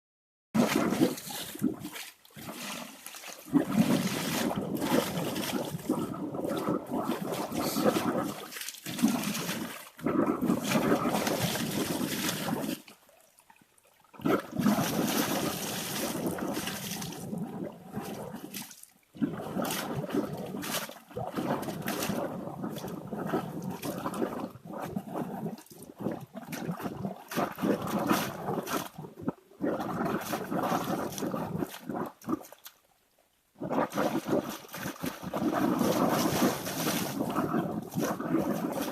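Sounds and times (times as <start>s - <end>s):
water gushing and splashing: 0.6s - 32.8s, 33.6s - 38.9s.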